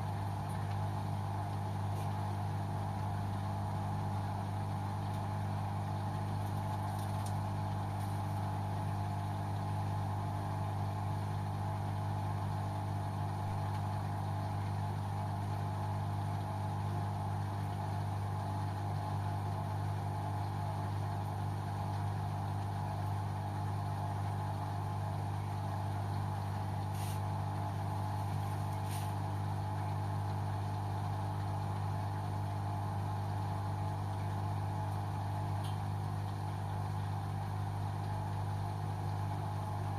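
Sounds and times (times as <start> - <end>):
washing machine humming: 0.0 - 39.9.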